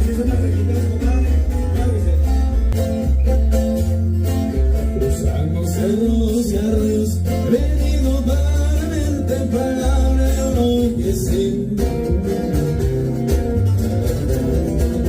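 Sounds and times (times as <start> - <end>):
person singing: 0.0 - 2.9, 4.5 - 12.5
heavy bass: 0.0 - 15.0
plucked guitar: 0.0 - 15.0.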